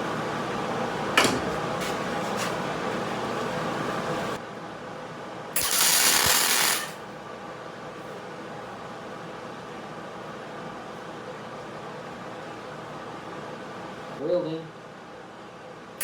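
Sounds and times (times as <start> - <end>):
welder humming: 5.6 - 7.0.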